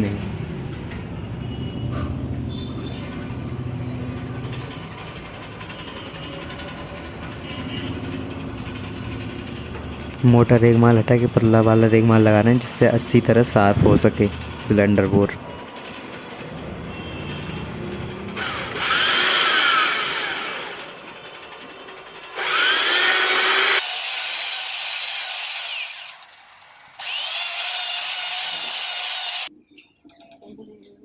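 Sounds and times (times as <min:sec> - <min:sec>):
power tool spinning sandpaper: 0:22.4 - 0:29.5.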